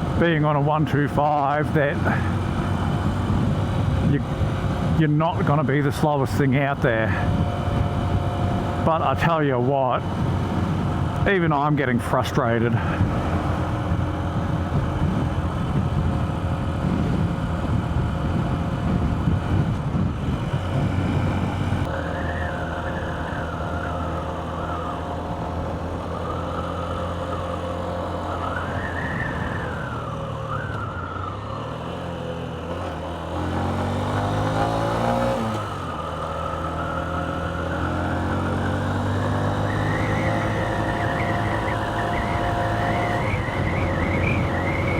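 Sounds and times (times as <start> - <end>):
motorcycle engine running: 0.0 - 5.8, 6.5 - 44.9
wind buffeting microphone: 2.0 - 6.0, 6.7 - 9.4, 10.0 - 12.1, 12.8 - 22.0
wavering wind whistle: 21.8 - 25.2, 28.3 - 31.6, 39.4 - 44.9.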